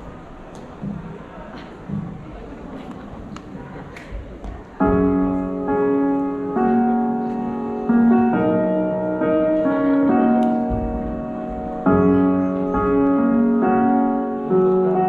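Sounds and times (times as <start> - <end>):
piano playing slow chords: 4.8 - 15.0.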